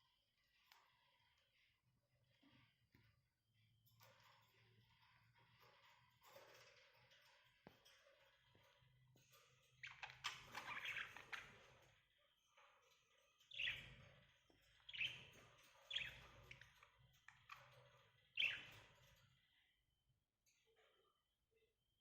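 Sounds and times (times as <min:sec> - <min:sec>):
parrots chirping: 0:09.8 - 0:11.8, 0:13.5 - 0:14.1, 0:14.8 - 0:17.6, 0:18.4 - 0:18.9.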